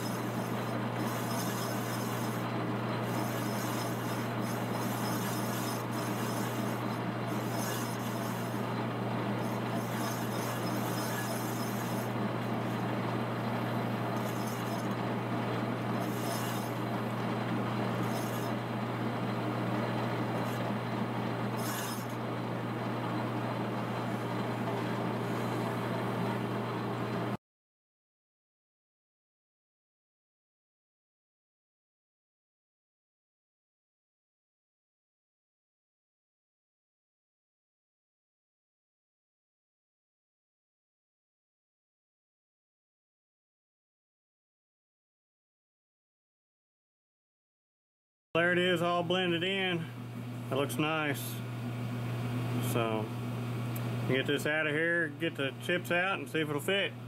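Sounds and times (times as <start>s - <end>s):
high-pitched metal scraping: 0.0s - 8.7s, 9.4s - 12.9s, 14.0s - 15.0s, 15.8s - 17.2s, 17.8s - 18.6s, 20.3s - 20.7s, 21.5s - 22.2s
boring tool cutting metal: 0.0s - 26.2s
lathe running with steady hum: 0.0s - 27.4s, 48.4s - 57.0s.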